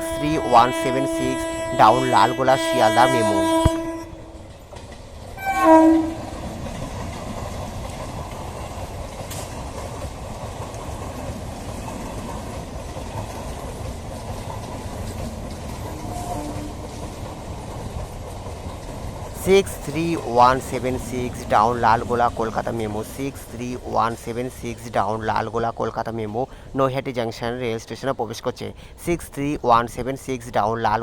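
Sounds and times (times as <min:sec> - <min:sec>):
faint horn note: 0:00.0 - 0:04.4
train horn blast: 0:00.0 - 0:04.5, 0:05.4 - 0:06.4, 0:15.8 - 0:17.2
train wheels rumbling on track: 0:00.0 - 0:31.0.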